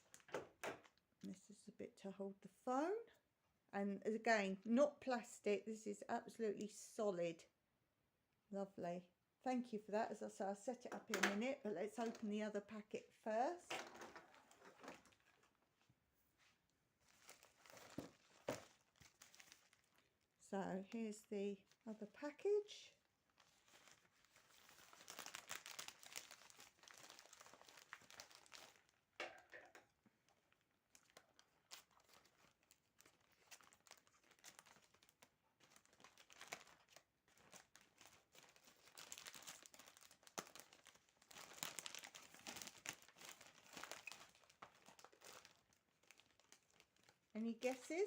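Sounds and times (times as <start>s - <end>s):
packaging crinkling and rustling: 13.7s - 16.0s, 17.0s - 20.2s, 23.2s - 48.0s
packaging tearing: 23.9s - 28.8s, 31.0s - 47.1s.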